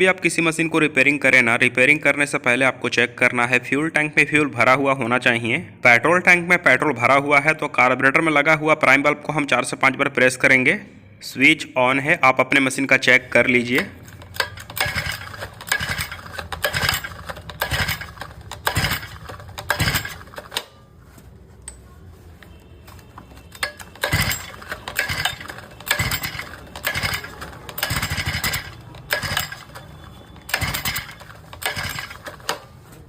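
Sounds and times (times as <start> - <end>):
recoil starter rope pulls: 13.6 - 20.8, 22.9 - 32.9
engine turning over: 13.8 - 20.8, 23.5 - 32.7.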